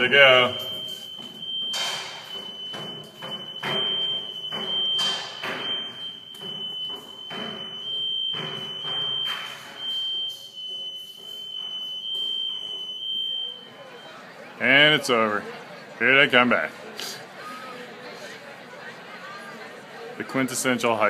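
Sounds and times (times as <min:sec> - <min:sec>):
fire alarm high-pitched tone: 0:00.0 - 0:15.4.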